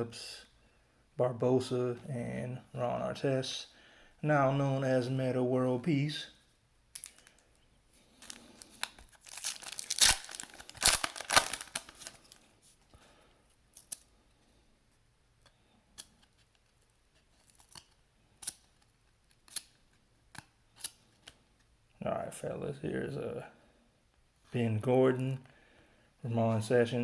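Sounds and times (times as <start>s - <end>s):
wrapper tearing and crinkling: 6.9s - 7.4s, 8.1s - 12.4s.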